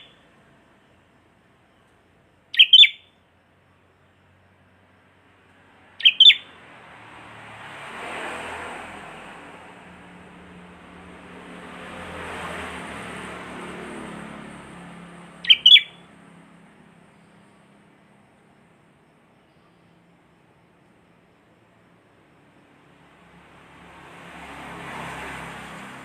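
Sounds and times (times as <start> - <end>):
bulbul chirping: 2.5 - 3.2, 6.0 - 6.5, 15.4 - 16.0.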